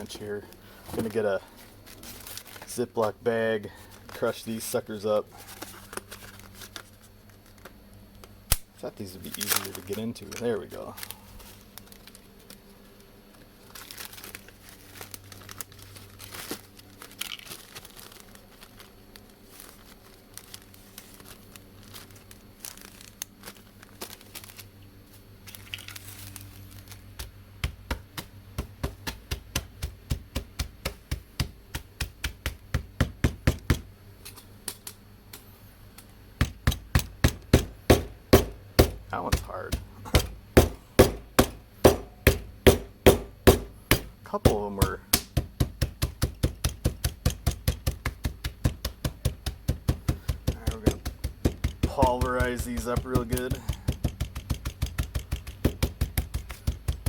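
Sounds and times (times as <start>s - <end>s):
plastic packaging crinkling: 0.0s - 8.0s, 8.9s - 27.6s
pounding sharp knocks: 36.4s - 57.0s.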